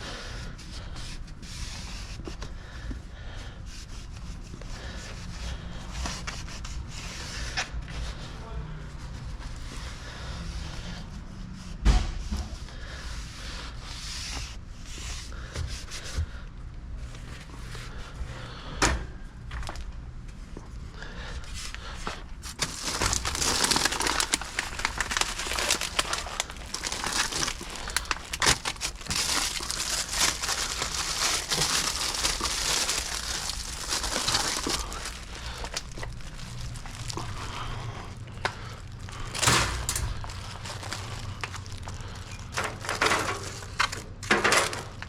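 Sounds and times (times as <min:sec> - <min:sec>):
plastic packaging crinkling: 0:22.4 - 0:45.0.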